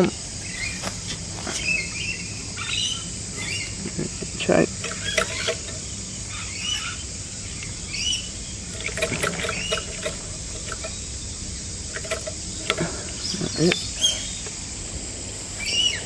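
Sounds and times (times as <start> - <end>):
steady outdoor hiss: 0.0 - 16.0
light clicks and rattles: 8.7 - 11.0, 11.9 - 13.8.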